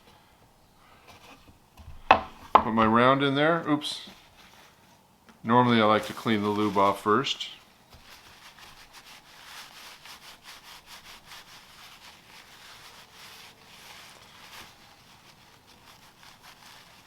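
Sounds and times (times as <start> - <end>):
hands rubbing and scratching cartridge: 7.9 - 17.0.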